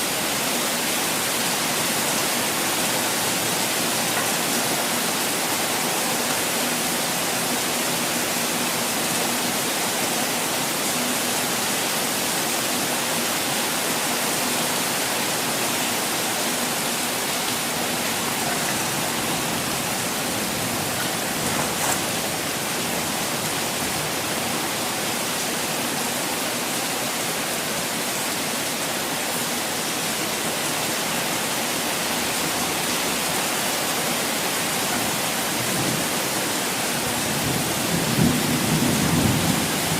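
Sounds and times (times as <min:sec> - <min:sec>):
falling water rushing: 0:00.0 - 0:38.9.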